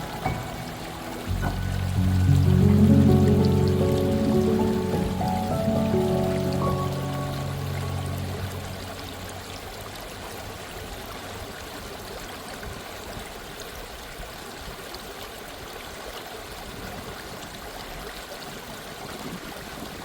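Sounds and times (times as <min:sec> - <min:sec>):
waterfall splashing: 0:00.0 - 0:13.2.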